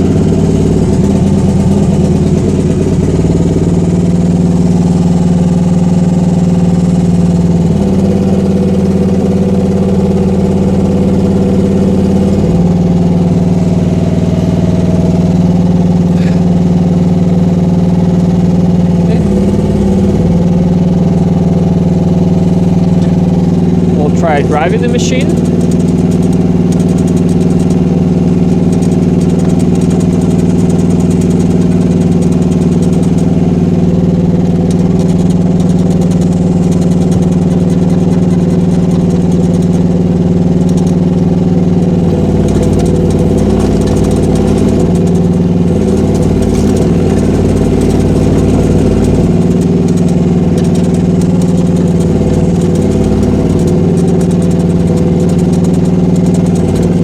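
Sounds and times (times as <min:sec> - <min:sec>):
excavator engine running: 0:00.0 - 0:57.0.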